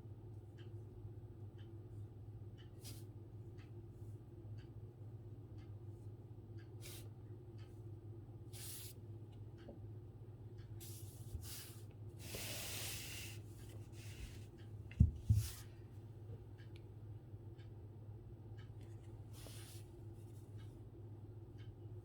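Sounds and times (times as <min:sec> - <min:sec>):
brush sweeping across paper: 0:08.6 - 0:09.0, 0:10.8 - 0:14.4, 0:15.3 - 0:15.7, 0:19.4 - 0:19.9
dull thumps: 0:14.2 - 0:15.6.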